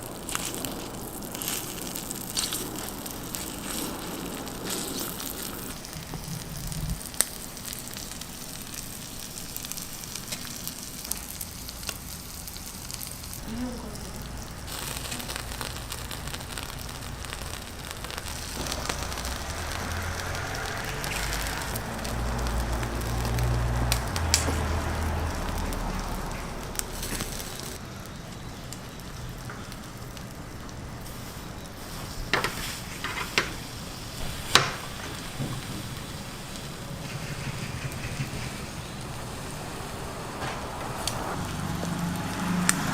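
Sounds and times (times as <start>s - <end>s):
low rumble: 0.0s - 27.8s
food sizzling: 0.0s - 42.9s.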